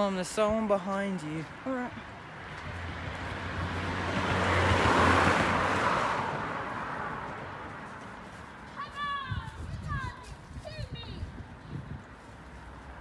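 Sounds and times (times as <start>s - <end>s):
car passing by: 2.2s - 8.8s.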